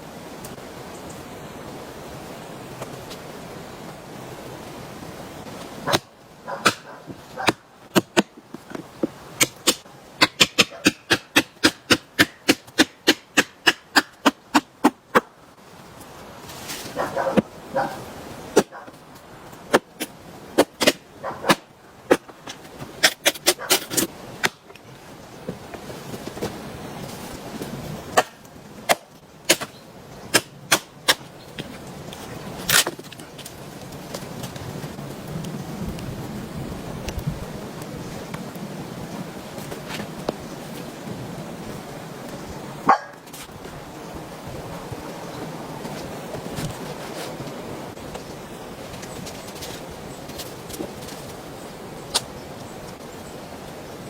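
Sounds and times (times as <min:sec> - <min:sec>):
steady rushing noise: 0:24.0 - 0:54.0.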